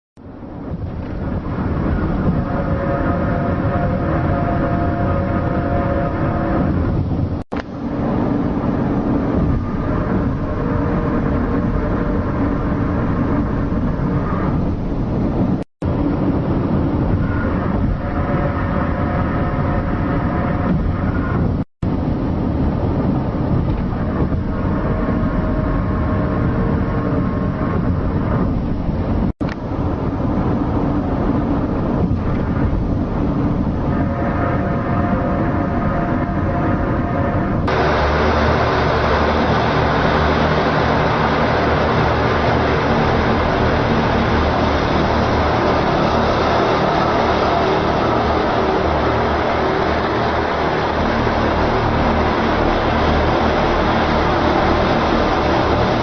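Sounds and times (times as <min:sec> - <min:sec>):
low droning rumble: 0:00.2 - 0:56.0
sustained groaning tones: 0:01.2 - 0:14.9, 0:23.8 - 0:28.5, 0:33.8 - 0:56.0.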